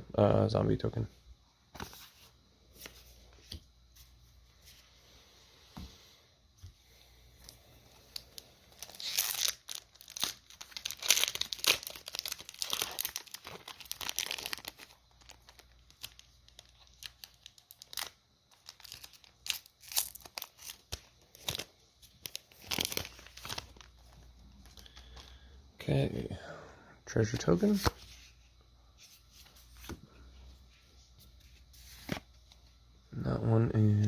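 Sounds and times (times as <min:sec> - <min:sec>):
foil wrapper tearing and crinkling: 0:08.1 - 0:25.1.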